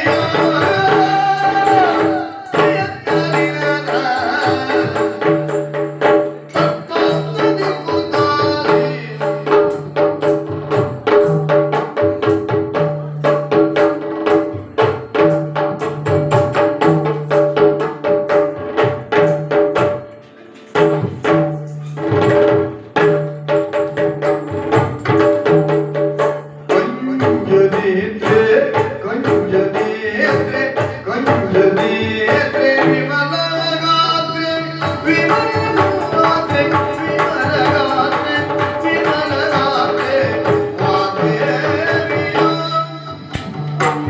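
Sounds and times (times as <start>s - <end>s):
rapid drum strokes: 0.0s - 33.5s.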